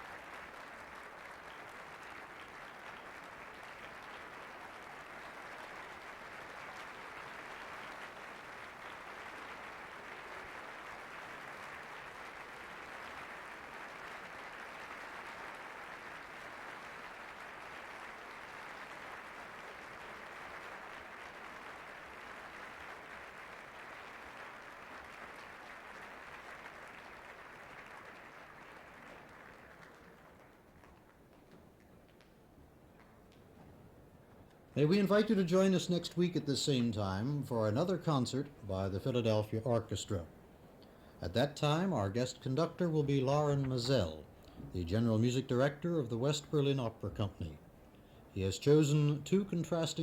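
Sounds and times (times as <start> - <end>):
audience applauding: 0.0 - 32.3.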